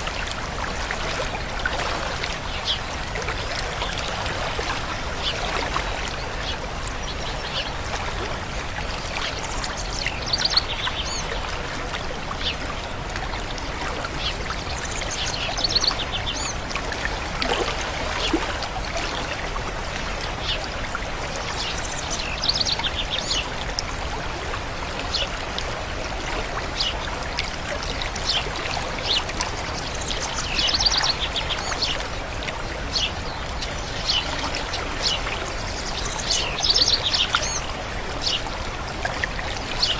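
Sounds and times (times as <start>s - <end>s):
stream water flowing: 0.0s - 39.9s.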